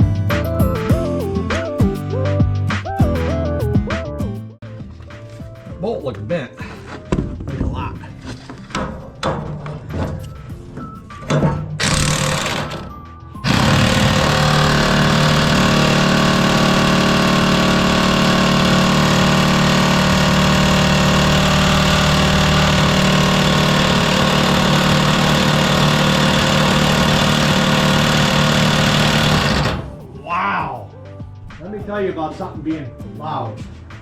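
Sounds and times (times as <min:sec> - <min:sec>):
loud power tool running: 0:11.8 - 0:30.0.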